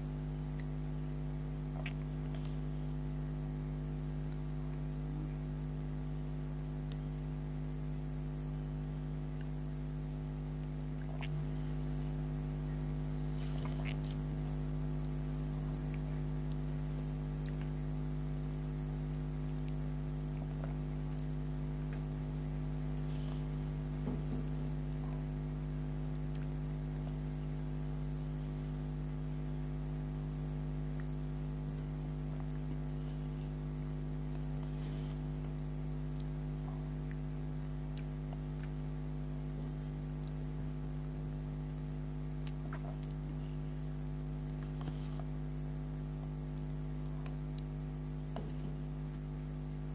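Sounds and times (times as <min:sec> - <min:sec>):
electrical hum: 0:00.0 - 0:49.9
person chewing: 0:01.4 - 0:03.2, 0:10.6 - 0:18.6, 0:26.1 - 0:28.2, 0:30.9 - 0:38.8, 0:39.6 - 0:40.6, 0:41.7 - 0:49.9.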